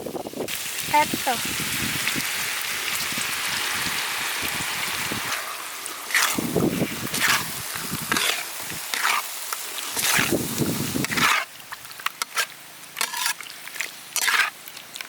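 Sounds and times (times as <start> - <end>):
food sizzling in a hot pan: 0.0 - 15.0
spatula stirring and scraping: 5.2 - 15.0.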